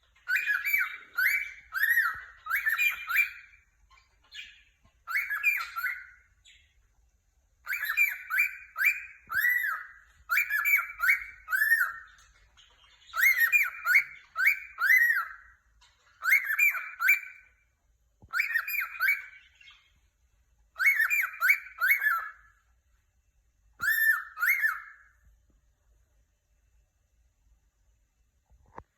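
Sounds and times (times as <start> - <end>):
cockatiel chirping: 0.0 - 6.9, 7.6 - 20.1, 20.7 - 22.7, 23.7 - 25.3.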